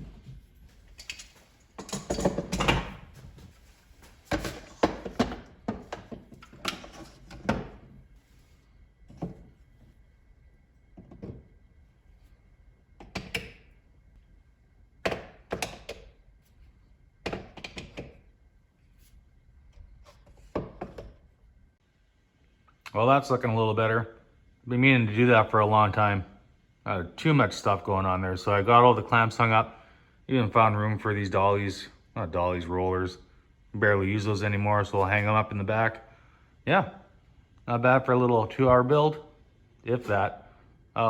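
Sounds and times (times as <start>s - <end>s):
clamps clattering on holder: 1.0s - 3.0s.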